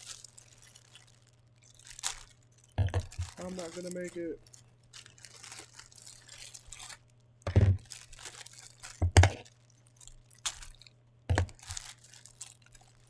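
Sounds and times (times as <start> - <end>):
packaging crinkling and tearing: 0.0 - 13.0
heavy thumps: 7.5 - 7.9.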